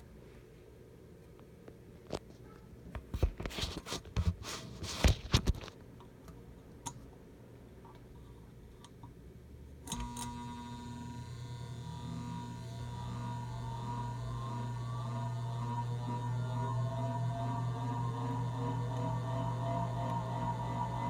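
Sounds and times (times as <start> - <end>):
ceiling fan motor humming: 9.9 - 21.0.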